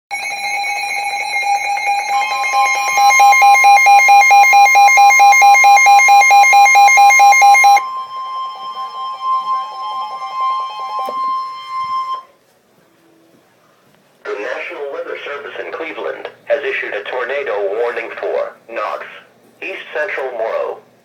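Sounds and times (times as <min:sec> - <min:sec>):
pulsing electronic tone: 0:00.1 - 0:12.2
steady electronic tone: 0:00.1 - 0:12.3.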